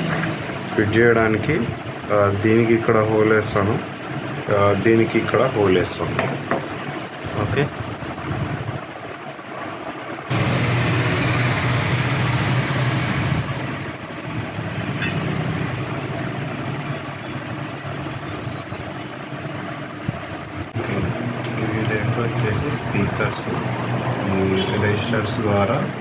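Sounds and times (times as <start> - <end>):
electric drill boring: 10.3 - 13.8.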